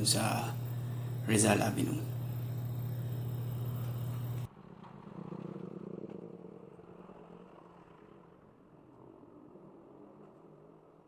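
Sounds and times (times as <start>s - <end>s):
faint low hum: 0.0s - 4.5s.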